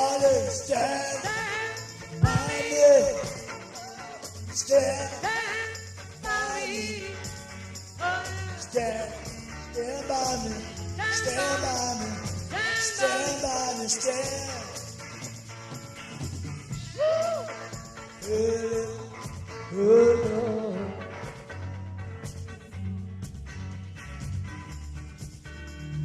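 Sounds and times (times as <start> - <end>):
bass line: 0.0 - 13.6
bright high percussion: 0.0 - 19.0.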